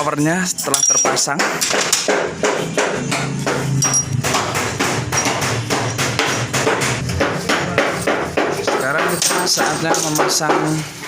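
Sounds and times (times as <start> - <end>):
hammer blows: 1.0 - 10.8.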